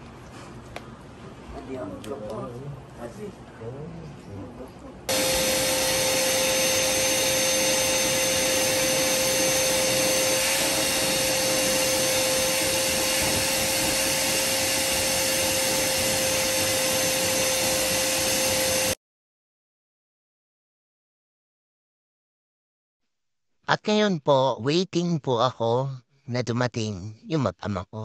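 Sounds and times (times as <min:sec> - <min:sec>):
rushing motor with whine: 0:05.1 - 0:19.0.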